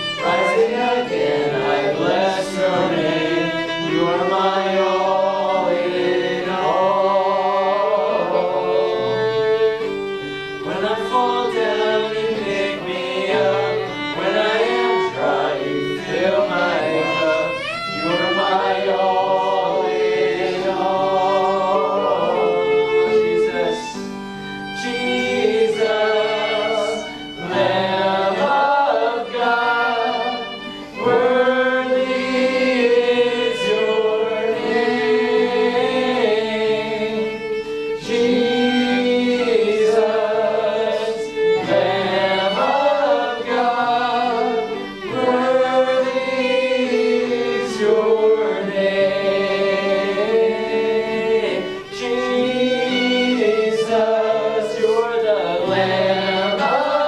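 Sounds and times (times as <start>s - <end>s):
instrumental accompaniment: 0.0s - 57.0s
voices singing held notes: 0.0s - 57.0s.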